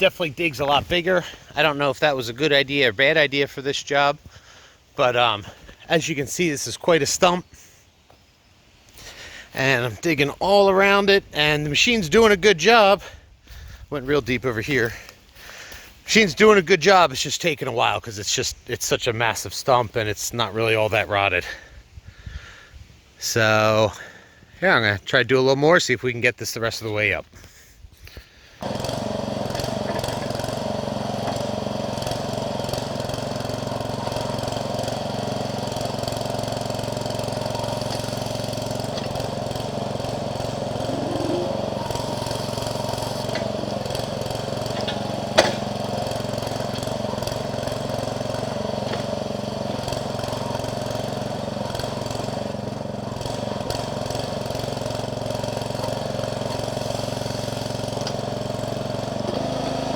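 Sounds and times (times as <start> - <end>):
backhoe engine running: 28.6 - 59.9.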